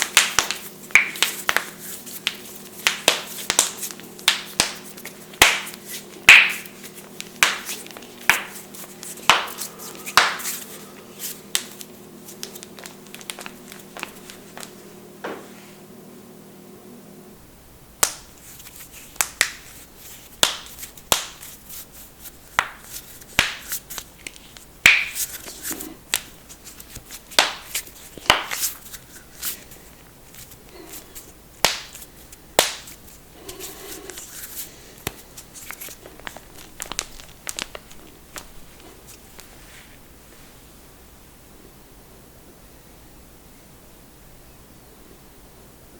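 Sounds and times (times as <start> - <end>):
soft rustling: 18.3 - 40.7.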